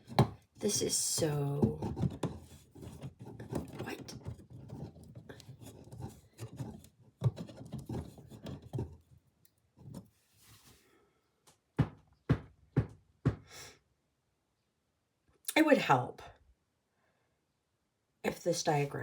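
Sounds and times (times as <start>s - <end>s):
wooden parts clattering and rattling: 1.4s - 9.2s.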